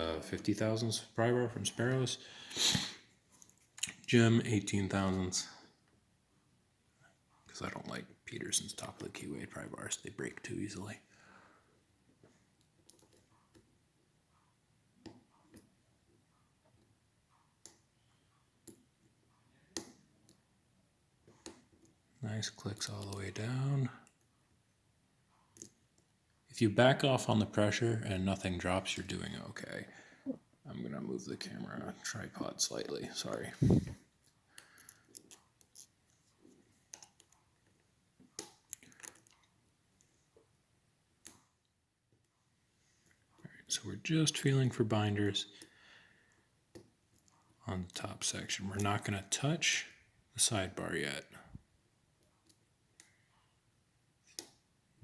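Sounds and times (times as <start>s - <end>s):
handling clicks and soft knocks: 32.7s - 40.6s.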